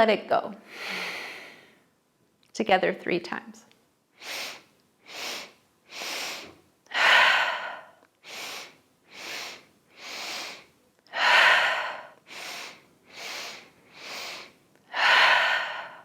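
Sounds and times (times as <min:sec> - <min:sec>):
forceful exhale: 0:05.2 - 0:16.0.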